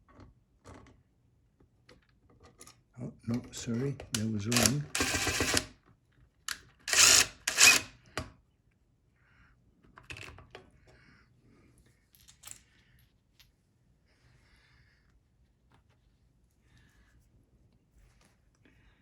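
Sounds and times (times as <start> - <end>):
impact driver bursts: 4.5 - 5.7, 6.9 - 7.9.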